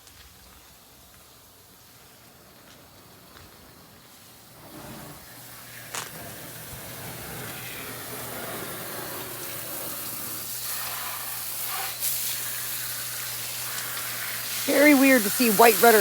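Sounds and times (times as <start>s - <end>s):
water spraying hiss: 0.0s - 16.0s.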